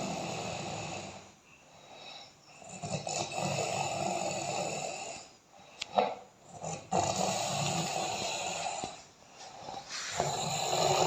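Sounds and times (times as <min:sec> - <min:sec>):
loud rough snoring: 0:00.0 - 0:01.4, 0:02.6 - 0:05.4, 0:06.5 - 0:09.0, 0:09.7 - 0:11.0.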